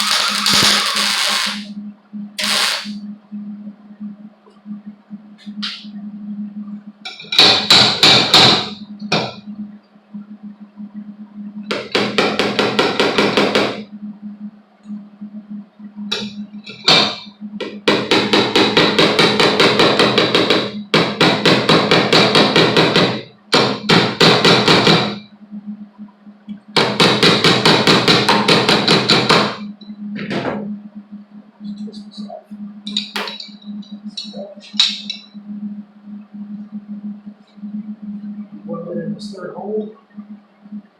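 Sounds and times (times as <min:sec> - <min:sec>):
welder arcing and crackling: 0:00.0 - 0:01.7, 0:02.4 - 0:03.0
steady low hum: 0:00.0 - 0:40.9.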